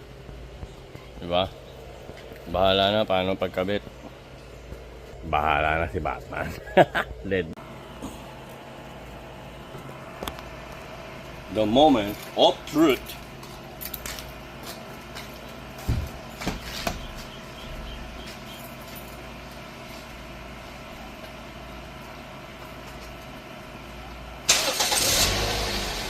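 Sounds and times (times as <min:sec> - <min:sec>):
vehicle engine starting and running: 0:23.1 - 0:26.0.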